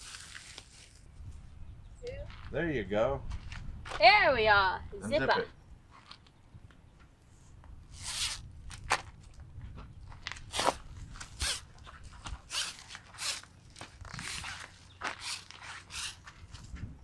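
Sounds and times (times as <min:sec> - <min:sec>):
material rustling and crinkling: 0:00.0 - 0:01.1.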